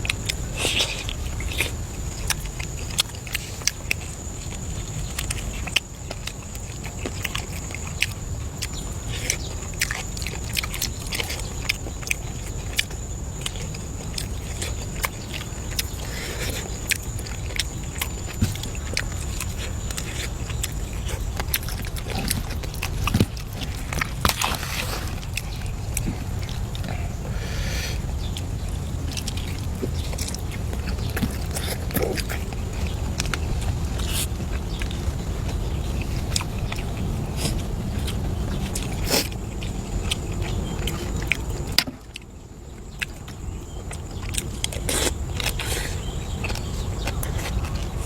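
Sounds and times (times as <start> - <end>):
chewing and crunching food: 0.0 - 48.0.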